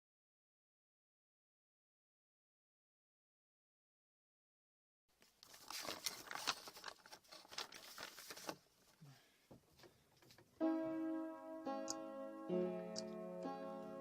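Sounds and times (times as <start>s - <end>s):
crackling rustling noise: 5.1s - 9.0s
slow piano chords: 10.6s - 14.0s.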